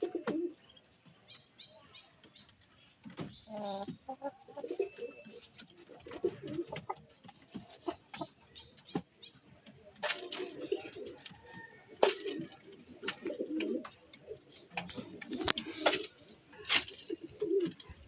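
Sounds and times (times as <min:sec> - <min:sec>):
poultry cooing and clucking: 0:00.0 - 0:00.6, 0:03.4 - 0:08.4, 0:09.7 - 0:18.0.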